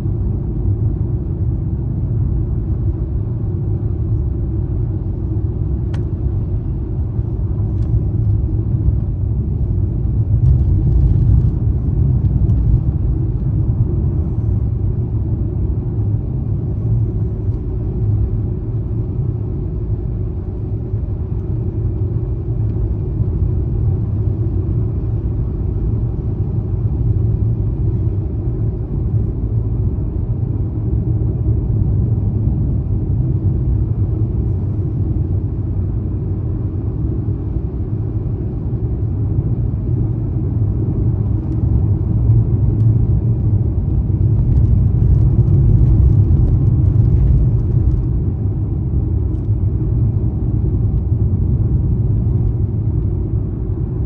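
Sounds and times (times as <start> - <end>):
car engine and tyre rumble: 0.0 - 54.0.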